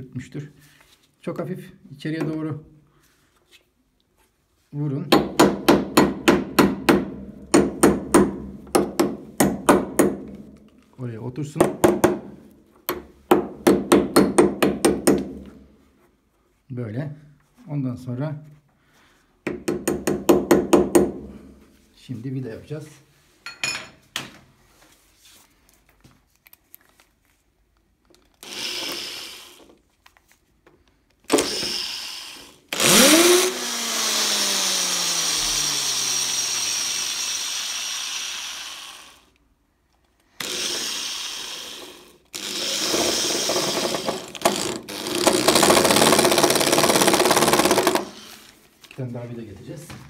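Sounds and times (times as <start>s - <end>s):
power drill driving screws: 28.4s - 29.8s, 31.2s - 39.4s, 40.3s - 48.6s.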